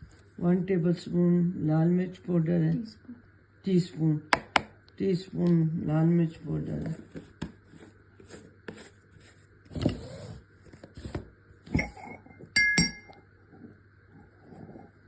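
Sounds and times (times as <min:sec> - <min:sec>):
utensils tapping and knocking: 0:11.7 - 0:13.2
spoon clinking on container rim: 0:11.8 - 0:13.2.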